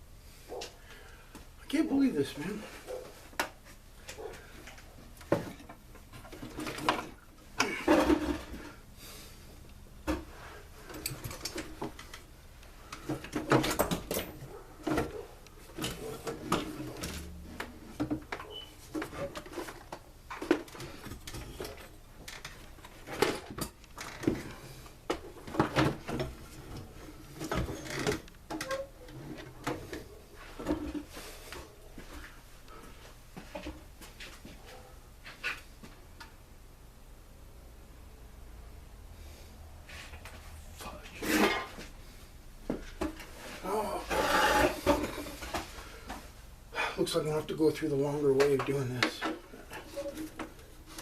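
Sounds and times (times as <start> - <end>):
clicks and rattles of metal and plastic: 10.9 - 12.3.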